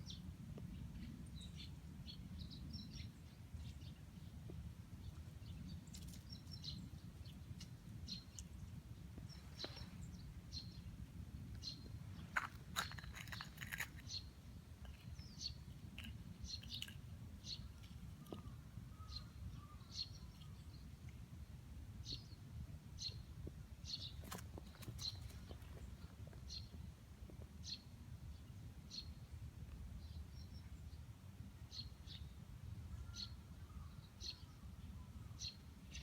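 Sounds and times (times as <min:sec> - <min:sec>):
small birds chirping: 0:00.0 - 0:21.2, 0:23.0 - 0:26.9.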